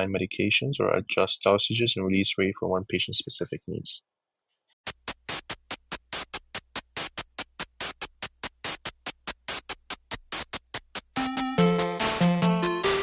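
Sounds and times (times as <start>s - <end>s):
drum machine beat: 4.8s - 13.0s
synthesizer melody: 11.2s - 13.0s.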